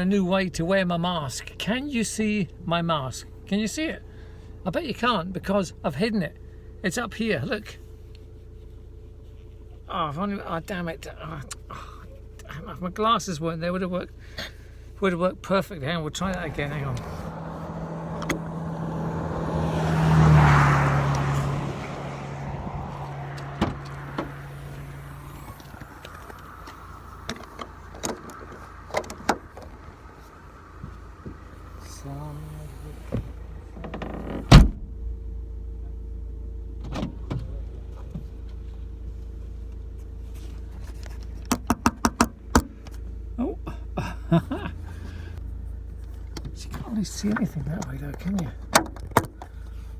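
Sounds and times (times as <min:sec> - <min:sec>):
vehicle passing close by: 0:16.2 - 0:33.8.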